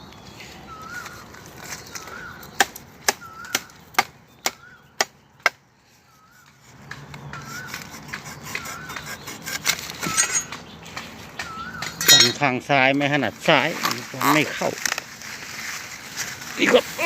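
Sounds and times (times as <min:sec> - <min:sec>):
machete chopping banana plant: 0:01.6 - 0:05.6.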